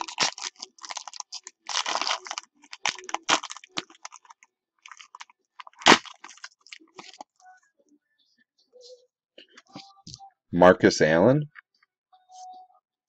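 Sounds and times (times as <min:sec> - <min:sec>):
wrapper crinkling: 0:00.0 - 0:07.3.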